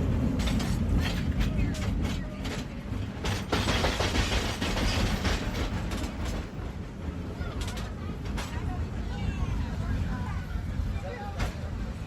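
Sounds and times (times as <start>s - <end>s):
cable car rumbling on track: 0.0s - 12.0s.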